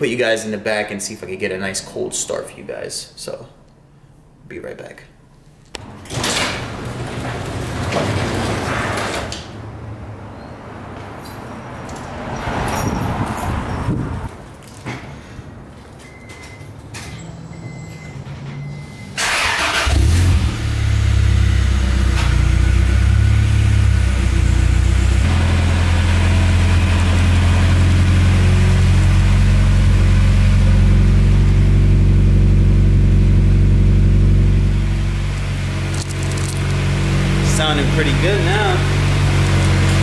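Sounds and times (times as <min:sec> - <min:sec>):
engine cranking: 0:19.2 - 0:20.4.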